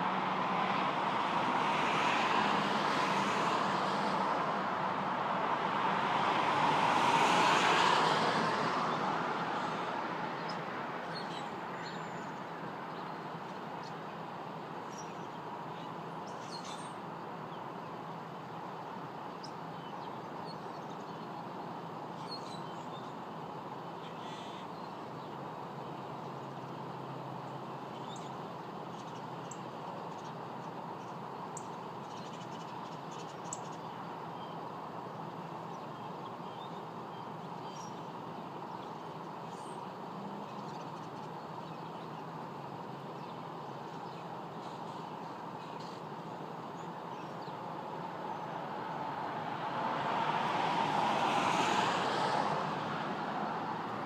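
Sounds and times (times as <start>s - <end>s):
vehicle passing: 0.0s - 10.3s, 47.7s - 54.0s
small birds chirping: 9.6s - 49.0s.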